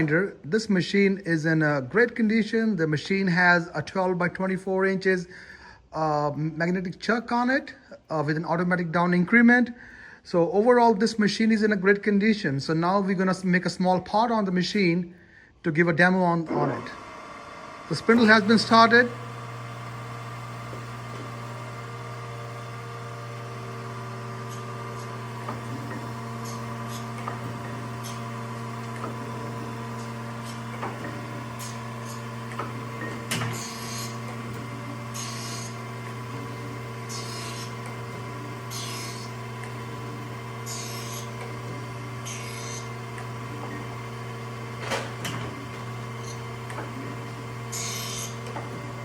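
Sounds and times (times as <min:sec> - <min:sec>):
grinder motor hum: 0:00.0 - 0:03.2, 0:16.0 - 0:49.0
grinding wheel hiss: 0:16.7 - 0:49.0.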